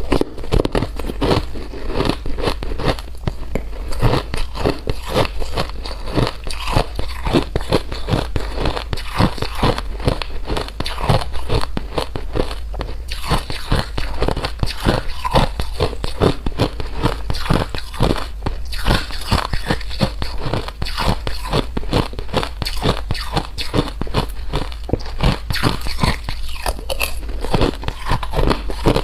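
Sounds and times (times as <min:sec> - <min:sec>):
chewing crunchy food: 0:00.0 - 0:29.0.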